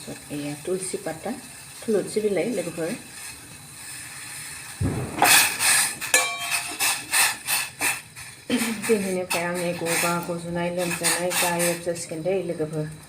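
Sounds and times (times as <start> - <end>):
faint steady hiss: 0.0 - 13.0
kitchen utensils clinking: 5.2 - 7.3.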